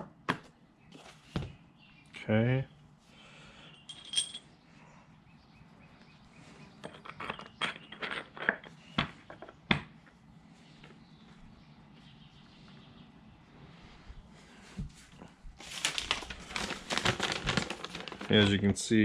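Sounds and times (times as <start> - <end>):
metal hardware clinking: 3.8 - 4.4.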